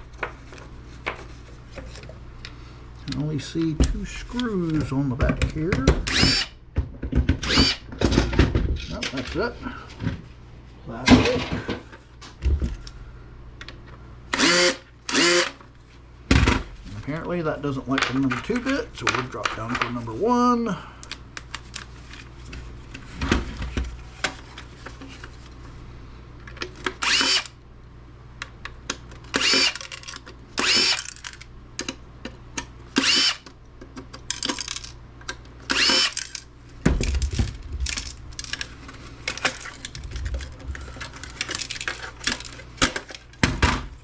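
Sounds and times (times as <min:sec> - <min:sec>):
power driver whirring: 0:06.0 - 0:06.6, 0:07.4 - 0:07.9, 0:14.3 - 0:15.6, 0:27.0 - 0:27.6, 0:29.3 - 0:29.8, 0:30.6 - 0:31.3, 0:32.9 - 0:33.5, 0:35.6 - 0:36.4
clatter of parts handled: 0:29.1 - 0:30.4, 0:31.0 - 0:32.0, 0:33.8 - 0:35.5, 0:36.1 - 0:44.0.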